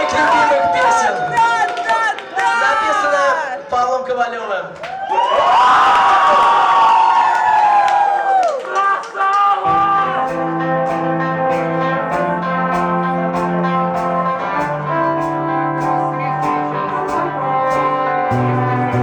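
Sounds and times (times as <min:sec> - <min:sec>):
bass line: 0:09.7 - 0:19.0.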